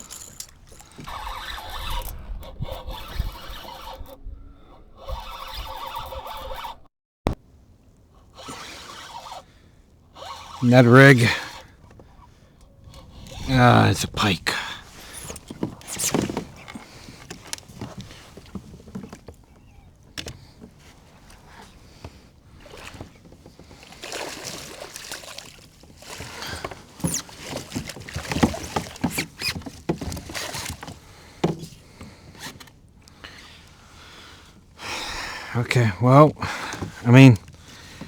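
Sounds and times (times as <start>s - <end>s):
water sloshing: 0.0s - 2.2s, 8.4s - 32.9s
knocks and rustles around kayak: 0.0s - 3.8s, 7.3s - 35.1s, 36.4s - 38.0s.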